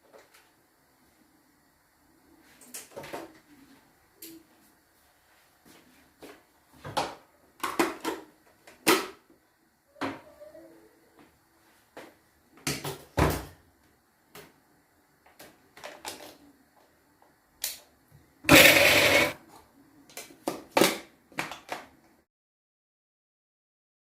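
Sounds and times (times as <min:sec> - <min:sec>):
utensils and containers knocking: 0:18.5 - 0:19.4.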